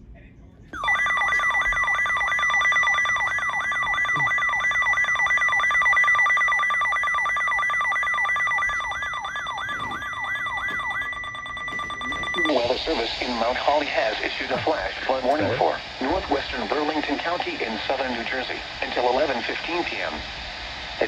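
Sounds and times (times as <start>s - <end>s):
steady high alarm tone: 0.7s - 17.4s.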